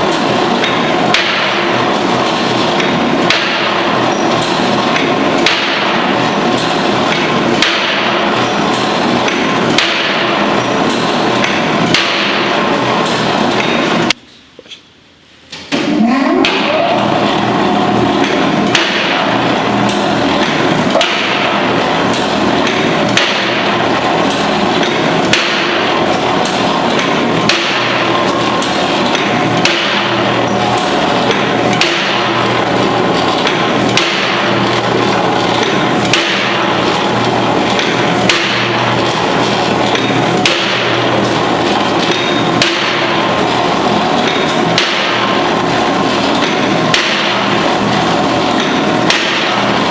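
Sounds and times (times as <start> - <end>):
sharp machine knock: 0.0 - 14.2, 15.7 - 49.9
press machine clatter and hum: 0.0 - 49.9.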